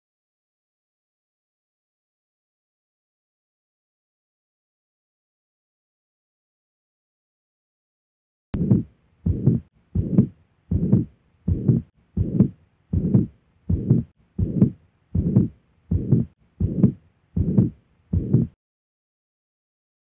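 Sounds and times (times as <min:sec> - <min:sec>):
heartbeat: 0:08.6 - 0:18.6.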